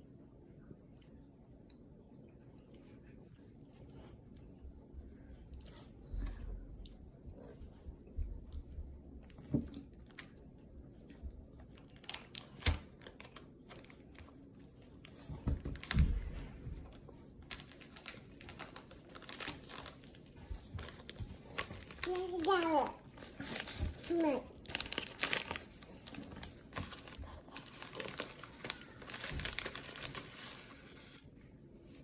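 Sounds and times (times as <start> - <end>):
snack wrappers crinkling: 9.8 - 15.2, 17.2 - 30.9.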